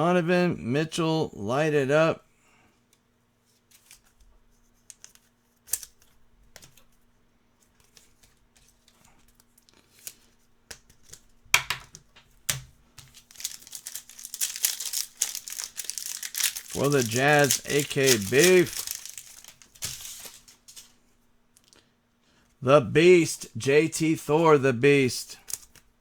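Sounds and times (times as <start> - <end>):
cards being shuffled: 13.0 - 21.0
wrapper crinkling and tearing: 13.0 - 21.0.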